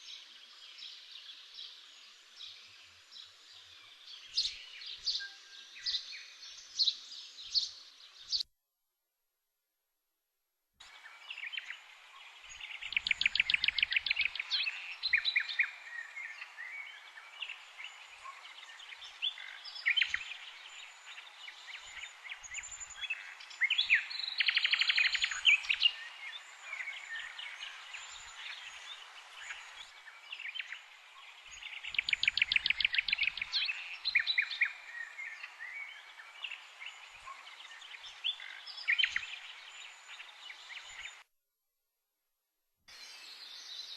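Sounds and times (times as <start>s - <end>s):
birds singing: 0.0s - 8.4s, 10.8s - 41.2s
background hiss: 10.8s - 41.2s.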